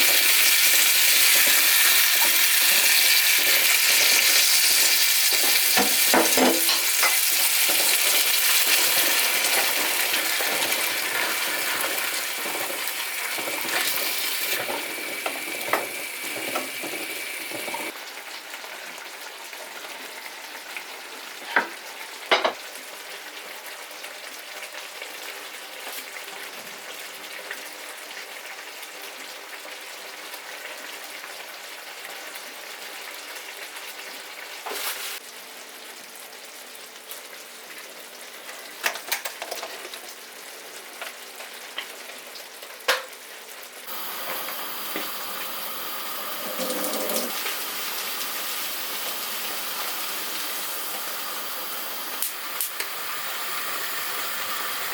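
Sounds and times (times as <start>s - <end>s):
food sizzling in a pan: 0.0s - 54.9s.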